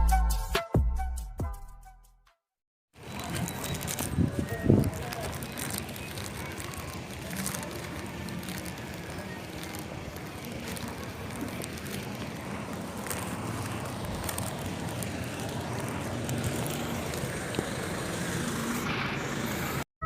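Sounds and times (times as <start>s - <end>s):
road traffic noise: 3.0s - 19.9s
wind noise on microphone: 3.4s - 5.1s.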